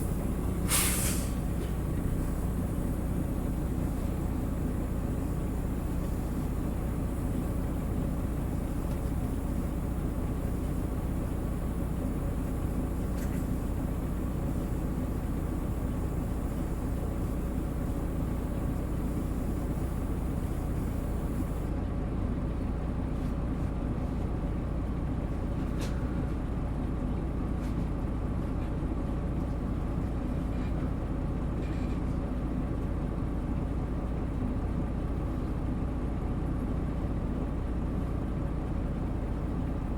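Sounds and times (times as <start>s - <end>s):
bus engine humming: 0.0s - 22.5s, 32.9s - 39.9s.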